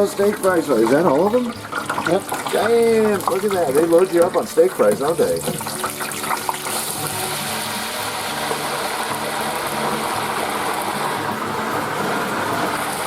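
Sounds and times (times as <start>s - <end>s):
fries sizzling in deep fryer oil: 0.0s - 13.0s.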